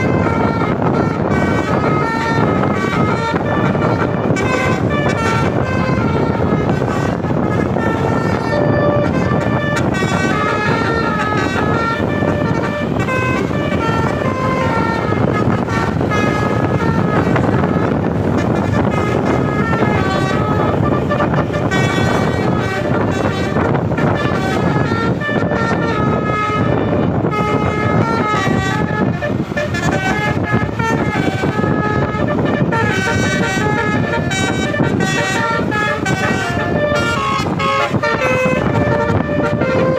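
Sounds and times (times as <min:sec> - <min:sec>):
musical air horn tune: 0:00.0 - 0:39.9
road and engine noise: 0:00.0 - 0:39.9.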